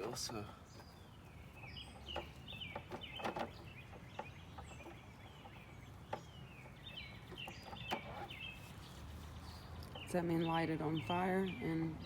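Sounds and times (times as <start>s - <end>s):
birds chirping: 0.0s - 12.0s
sharp clicks and knocks: 2.0s - 8.4s.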